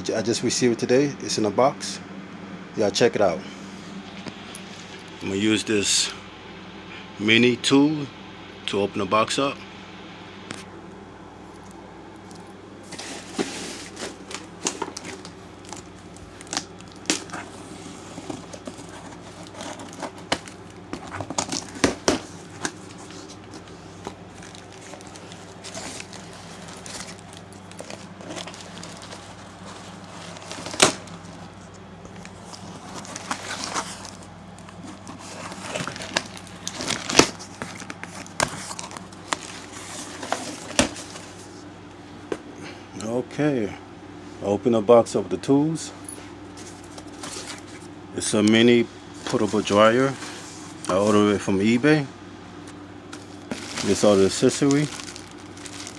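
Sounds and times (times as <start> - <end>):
packaging crinkling: 13.0 - 41.4, 53.1 - 55.9.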